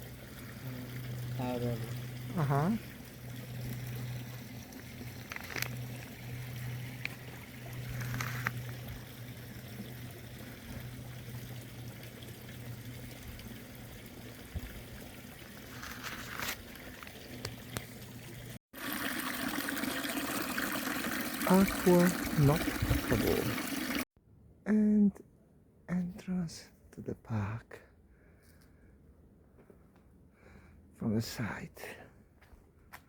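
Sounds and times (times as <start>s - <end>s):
low steady hum: 0.0s - 15.8s
water trickling and splashing: 0.0s - 24.1s.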